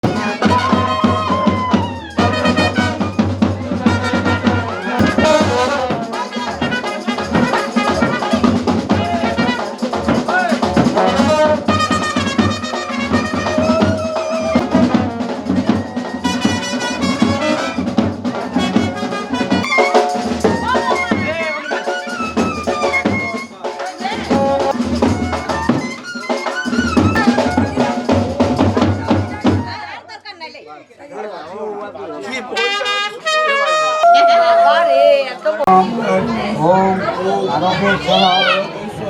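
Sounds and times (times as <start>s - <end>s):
drums: 0.0s - 29.9s
trumpet melody: 2.1s - 10.0s, 11.0s - 13.9s, 16.2s - 20.8s, 32.6s - 34.5s, 35.7s - 39.0s.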